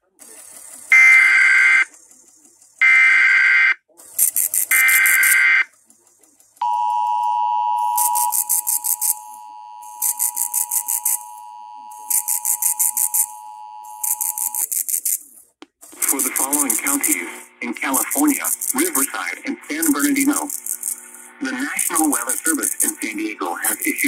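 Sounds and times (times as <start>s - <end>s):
two-tone attention signal: 6.6s - 14.6s
warbling data bursts: 7.8s - 15.2s, 16.0s - 24.0s
rapid high-pitched pulses: 8.0s - 15.2s, 16.0s - 24.0s.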